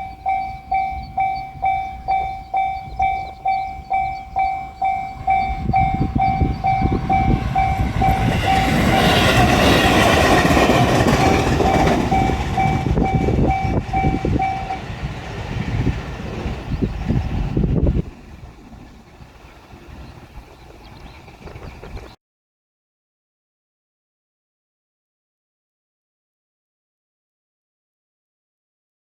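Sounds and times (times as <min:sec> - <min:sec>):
level-crossing bell clanging: 0:00.0 - 0:14.9
electric train passing: 0:00.0 - 0:22.2
wheels knocking over rail joints: 0:05.3 - 0:16.7.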